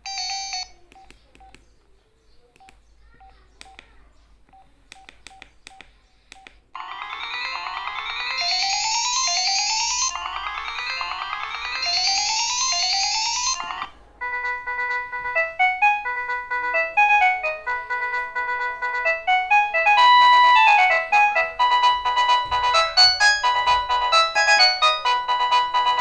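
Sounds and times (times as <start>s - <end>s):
phone ringtone melody: 0.0s - 0.9s, 6.8s - 26.0s.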